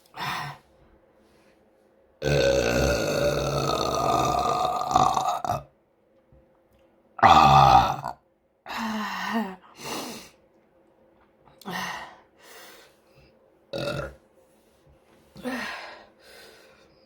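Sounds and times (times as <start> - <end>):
woman belching: 2.2 - 5.7, 7.2 - 8.2, 13.8 - 14.2.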